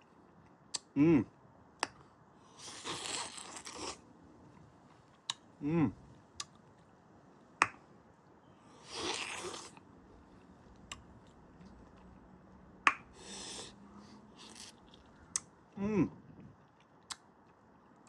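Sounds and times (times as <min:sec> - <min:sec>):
crunchy wet chewing: 0:02.5 - 0:04.0, 0:08.8 - 0:09.8, 0:13.2 - 0:15.5
person humming mm: 0:05.6 - 0:06.0.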